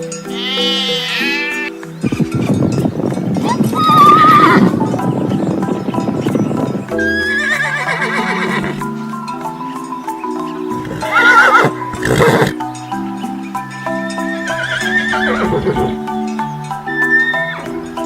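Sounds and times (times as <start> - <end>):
background music with held notes: 0.0 - 18.0
high wavering animal call: 0.0 - 18.0.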